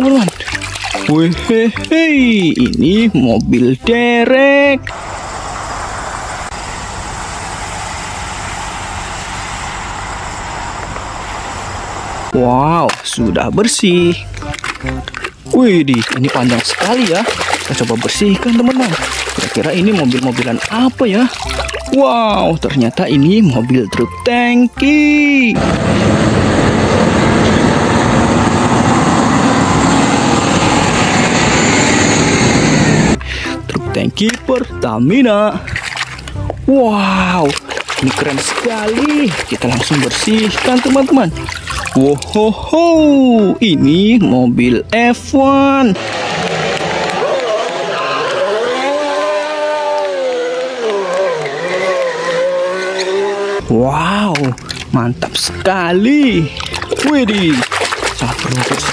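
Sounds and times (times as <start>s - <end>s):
water spray rushing: 16.1s - 21.8s, 37.4s - 42.2s, 56.7s - 58.9s.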